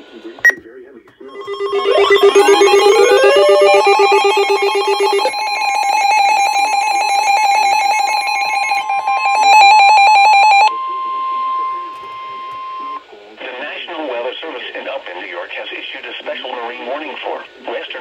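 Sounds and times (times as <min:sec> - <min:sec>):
electronic alert tones with rising sweeps: 0:01.2 - 0:10.7
fast-pulsing electronic beeping: 0:01.2 - 0:10.7
steady high tone: 0:01.2 - 0:13.0.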